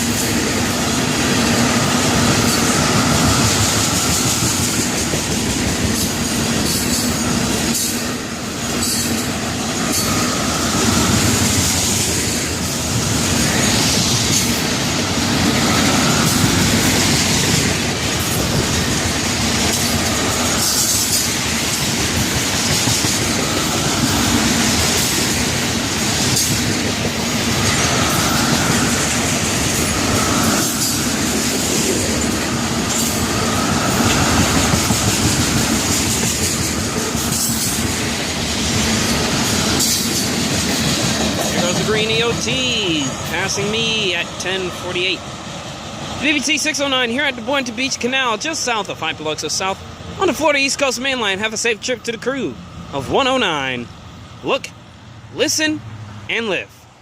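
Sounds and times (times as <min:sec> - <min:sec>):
wheels clickety-clack: 0:00.0 - 0:44.6
freight train wheels rumbling: 0:00.0 - 0:56.3.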